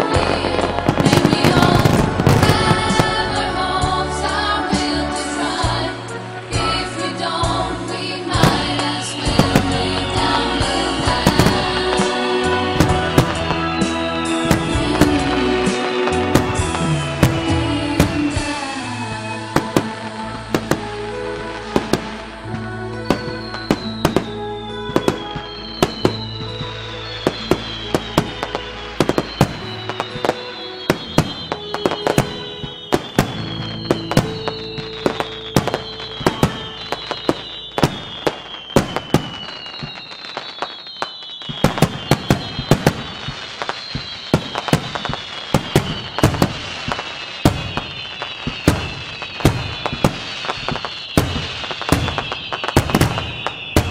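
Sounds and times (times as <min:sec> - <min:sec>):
background music with bass: 0:00.0 - 0:38.2
fireworks bangs and crackles: 0:00.0 - 0:53.9
fireworks whistles falling: 0:00.0 - 0:53.9.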